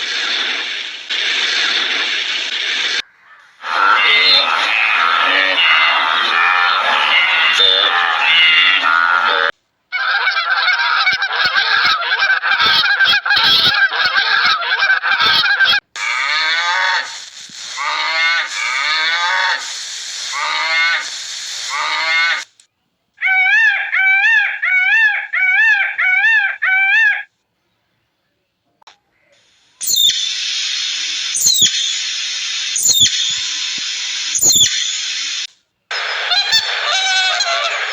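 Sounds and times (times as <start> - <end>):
geese honking: 3.0 - 17.1.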